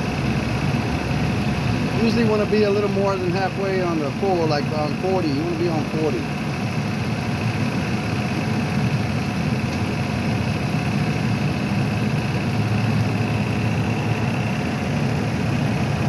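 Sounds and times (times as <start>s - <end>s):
faint steady whine: 0.0s - 6.4s
car engine idling: 0.0s - 16.0s.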